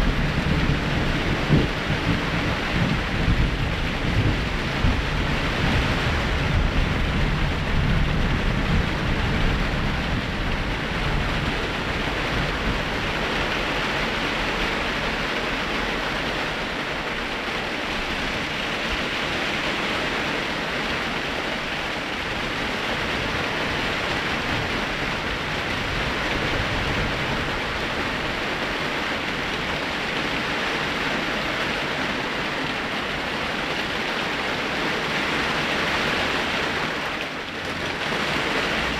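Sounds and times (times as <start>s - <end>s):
low thunder rumble: 0.0s - 19.6s, 21.6s - 30.1s
heavy rain falling: 0.0s - 38.9s.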